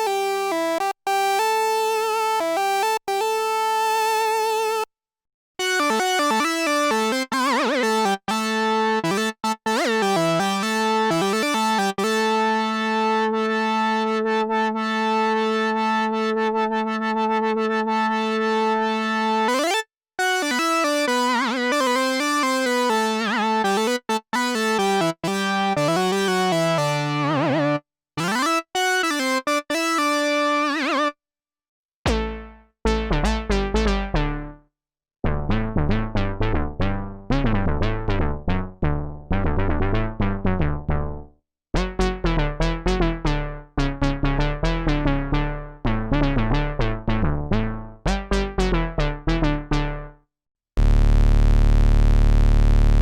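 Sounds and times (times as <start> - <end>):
buzzy synthesizer lead line: 5.7 - 31.1, 32.1 - 34.1, 50.8 - 53.0.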